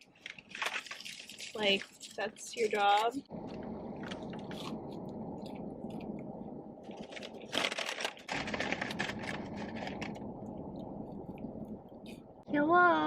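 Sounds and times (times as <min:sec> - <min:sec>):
light clicks and crinkling: 0:00.0 - 0:06.2
dense crackling burst: 0:02.4 - 0:12.6
steady low hum: 0:03.2 - 0:13.0.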